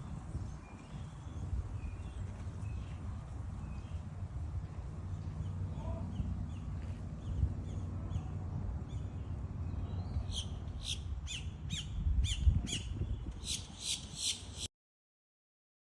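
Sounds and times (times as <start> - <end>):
bird calling: 10.2 - 14.7.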